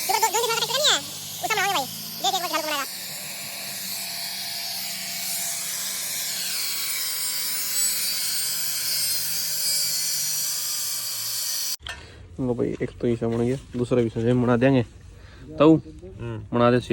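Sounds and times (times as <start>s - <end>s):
angle grinder cutting metal: 0.0s - 11.8s.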